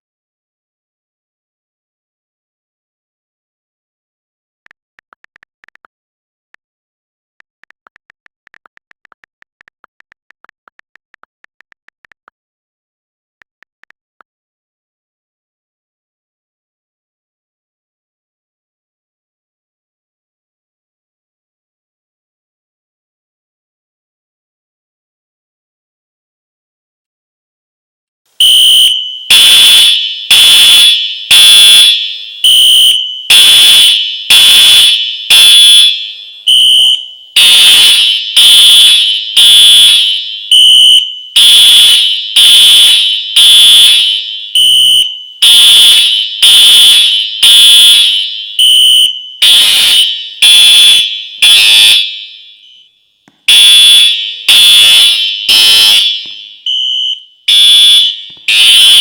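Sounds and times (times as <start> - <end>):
fire alarm blasts: 28.4 - 59.0.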